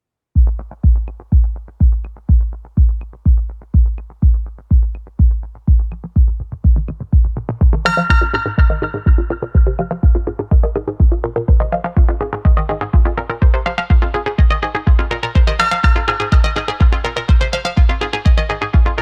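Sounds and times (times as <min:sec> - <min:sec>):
electronic kick drum beat: 0:00.4 - 0:19.0
bright synthesizer melody: 0:07.8 - 0:19.0.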